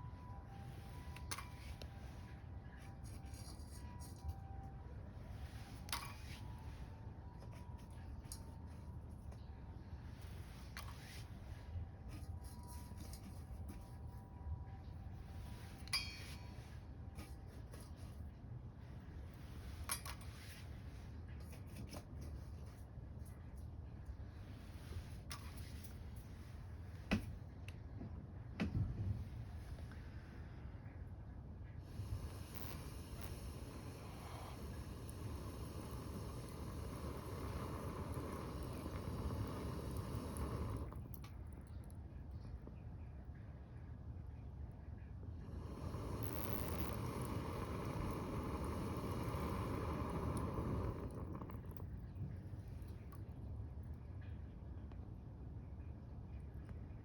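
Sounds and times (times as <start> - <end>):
low rumble of flames: 0.0 - 57.0
wood fire rumbling in stove: 31.7 - 41.9, 45.0 - 53.8
fire hiss: 31.8 - 41.3, 45.3 - 52.0
burning wood crackling and popping: 31.9 - 41.8, 45.4 - 52.2.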